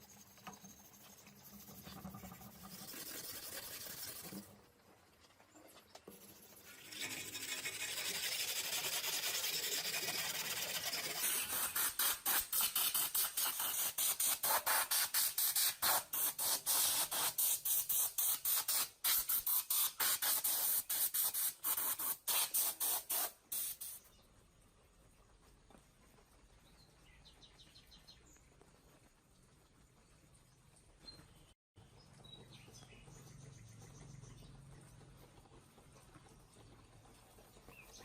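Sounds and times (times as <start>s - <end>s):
hissing spray: 7.7s - 24.1s.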